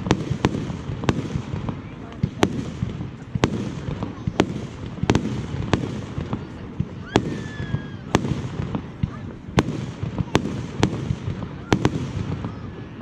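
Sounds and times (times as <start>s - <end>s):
fireworks bangs: 0.0s - 13.0s
low background noise: 0.0s - 13.0s
rising firework whistle: 7.0s - 8.6s.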